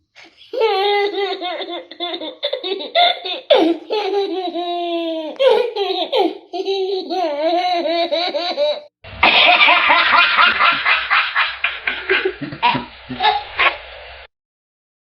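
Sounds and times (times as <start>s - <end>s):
baby giggling: 0.2s - 8.9s, 11.9s - 13.7s.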